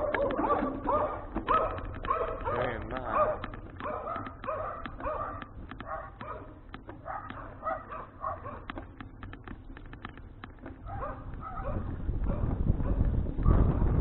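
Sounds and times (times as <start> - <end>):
dog barking: 0.0 - 8.8, 10.8 - 13.7
sharp ticks: 0.0 - 11.6
steady low rumble: 10.3 - 14.0.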